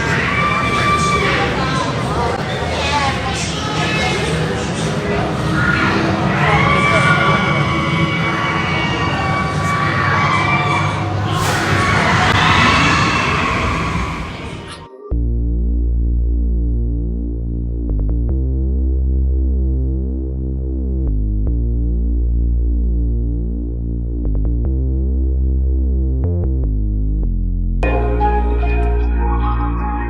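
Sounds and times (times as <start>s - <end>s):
crowd noise: 0.0s - 14.9s
keyboard chords over deep bass: 15.0s - 30.0s.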